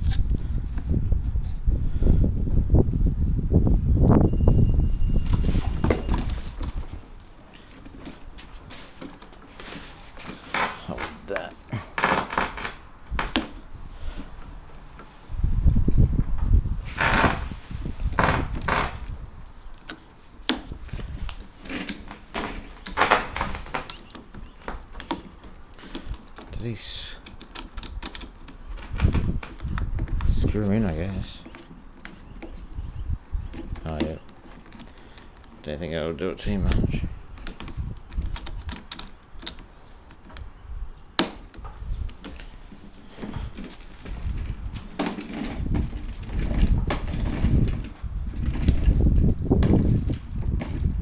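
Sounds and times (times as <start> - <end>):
rustling and scraping: 0.0 - 51.0
plastic parts clicking and knocking: 19.8 - 35.7, 36.6 - 40.5, 41.2 - 51.0.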